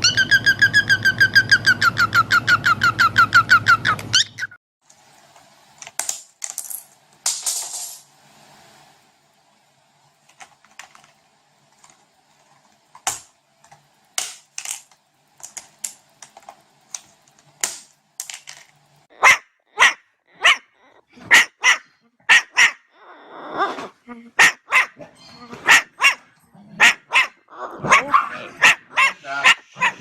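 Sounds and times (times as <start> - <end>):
dog barking sharply: 19.2 - 20.7, 21.3 - 22.8, 24.4 - 30.0.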